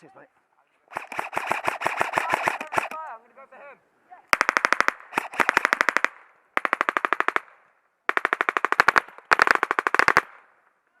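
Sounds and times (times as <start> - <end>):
airsoft gun bursts: 0.9 - 3.2, 4.3 - 7.4.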